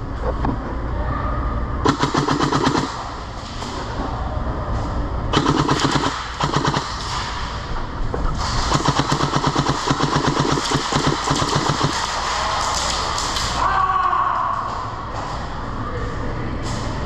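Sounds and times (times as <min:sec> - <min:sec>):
airsoft guns firing full-auto: 0:01.8 - 0:03.1, 0:05.3 - 0:07.3, 0:08.6 - 0:12.9.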